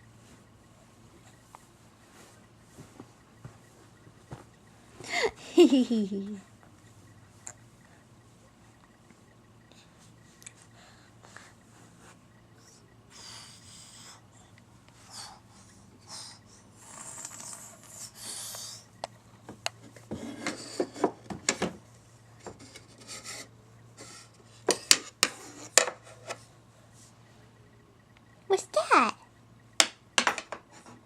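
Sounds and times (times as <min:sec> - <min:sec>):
rubbing and scraping: 0:22.5 - 0:24.4.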